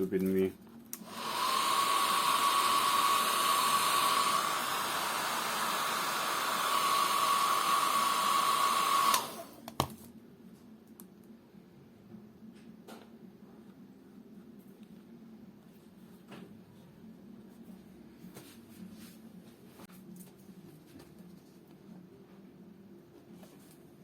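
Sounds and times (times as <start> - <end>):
hot-air dryer whining: 1.0 - 9.9.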